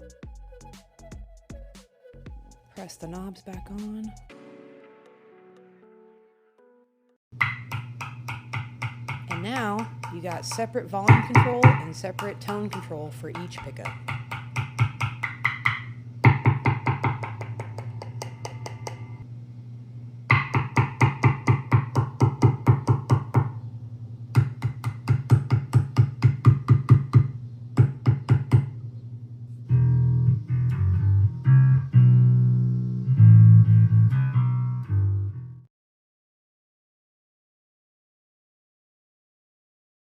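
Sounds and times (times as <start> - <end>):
electric bass notes: 27.4 - 35.7.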